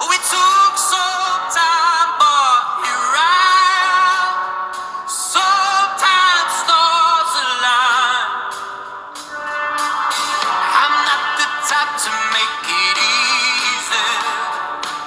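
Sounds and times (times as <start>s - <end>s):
background music: 0.0s - 15.0s
operatic singing with vibrato: 0.0s - 15.0s.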